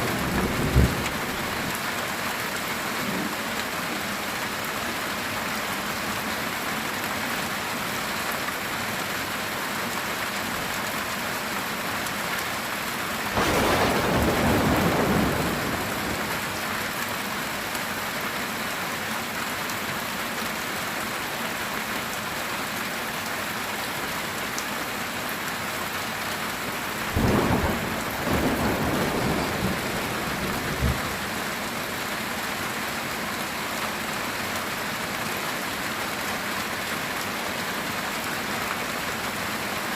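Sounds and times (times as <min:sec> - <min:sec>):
thunder rumbling: 0:00.0 - 0:01.7, 0:13.4 - 0:16.6, 0:27.2 - 0:31.3
heavy rain: 0:00.0 - 0:39.9.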